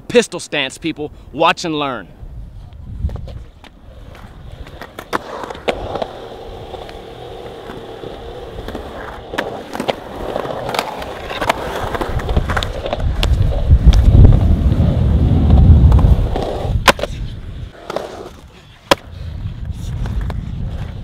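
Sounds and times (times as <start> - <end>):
skateboard rolling on concrete: 2.3 - 21.0
skateboard clacks: 3.1 - 14.5.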